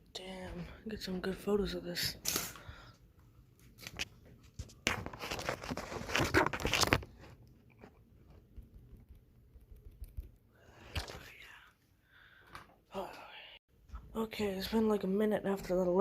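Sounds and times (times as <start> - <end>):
crackling rustling noise: 3.6 - 10.3.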